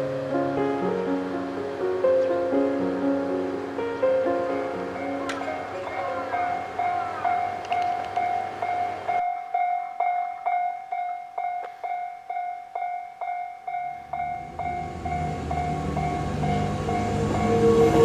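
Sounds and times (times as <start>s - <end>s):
train rumbling: 3.9s - 12.4s, 13.7s - 18.0s
level crossing electronic bell: 5.4s - 17.6s.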